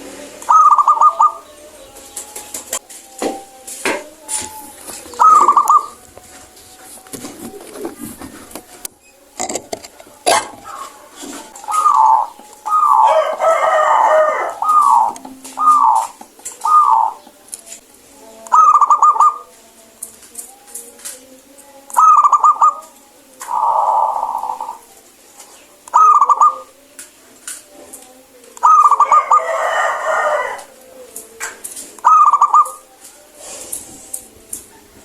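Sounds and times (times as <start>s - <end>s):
dove cooing: 0.0s - 2.8s, 3.5s - 17.5s, 18.5s - 19.6s, 21.9s - 24.9s, 25.5s - 26.9s, 28.6s - 30.8s, 32.0s - 33.6s.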